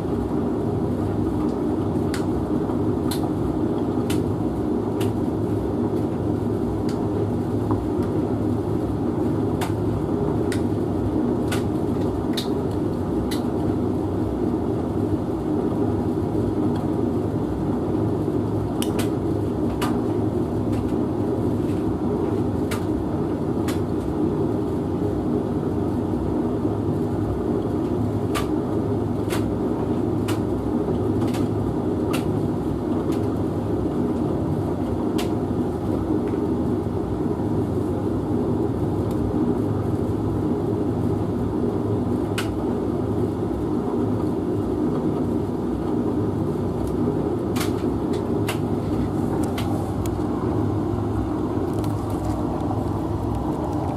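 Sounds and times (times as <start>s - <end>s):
washing machine and dryer humming: 0.0s - 53.9s.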